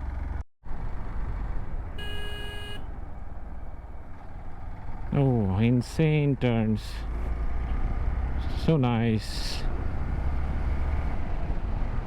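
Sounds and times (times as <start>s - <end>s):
wind and road noise: 0.0s - 12.0s
short horn beep: 2.0s - 2.9s.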